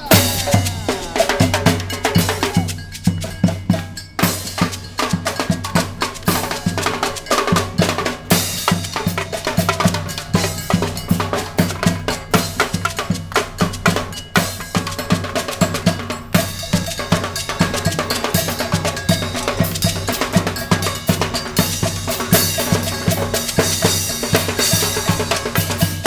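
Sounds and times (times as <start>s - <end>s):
low brass line: 0.0s - 2.8s
snare and bass drum groove: 0.0s - 26.0s.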